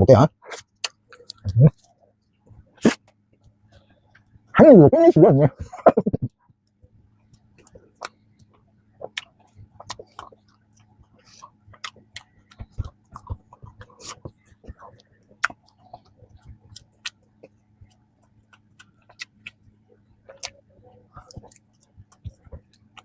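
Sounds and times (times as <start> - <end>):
wet mouth clicks: 0.5 - 1.9
crunchy pastry chewing: 7.2 - 23.0.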